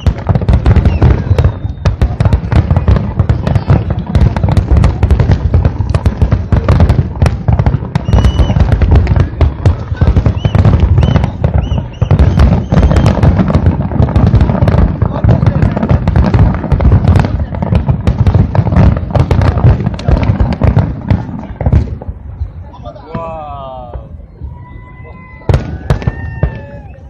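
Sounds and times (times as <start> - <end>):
firework whistles: 0.0 - 4.5, 7.7 - 13.6
fireworks booming and crackling: 0.0 - 27.0.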